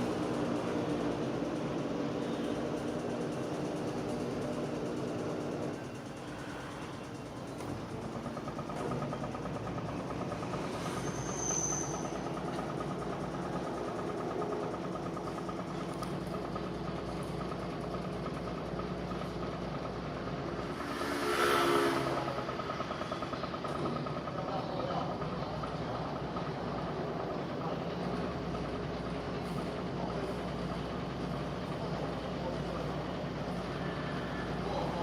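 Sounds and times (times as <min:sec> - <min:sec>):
washing machine running: 0:00.0 - 0:35.0.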